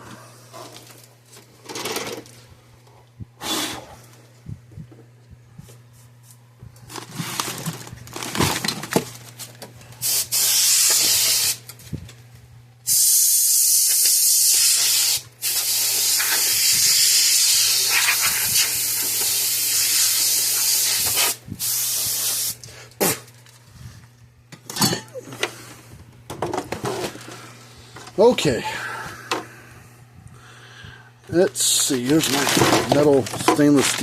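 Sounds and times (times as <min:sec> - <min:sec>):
loud even hissing: 0:10.0 - 0:11.6, 0:12.9 - 0:23.2.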